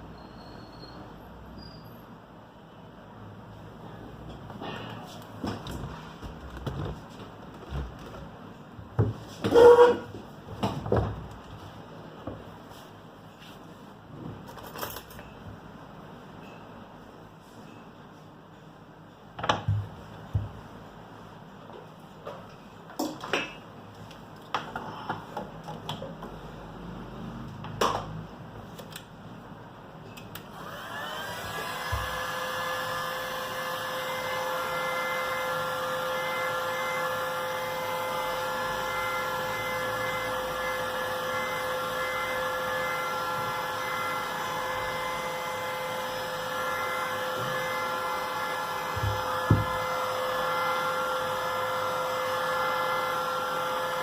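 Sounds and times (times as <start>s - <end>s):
electric blower motor whine: 30.5s - 54.0s.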